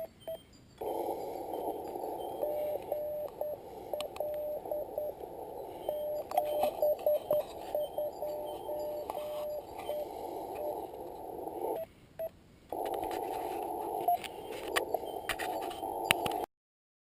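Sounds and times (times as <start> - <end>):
morse code tone: 0.0 - 16.5
radio band hiss: 0.8 - 11.8, 12.7 - 16.5
sharp clicks: 12.7 - 16.5.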